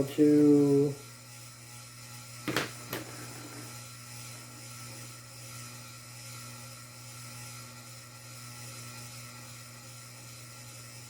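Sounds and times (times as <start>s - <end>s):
ceiling fan whirring: 0.0s - 11.0s.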